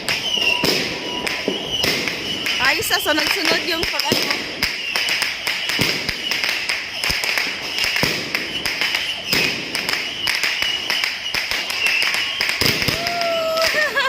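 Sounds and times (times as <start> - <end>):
firecrackers and fireworks bursting: 0.0 - 14.0.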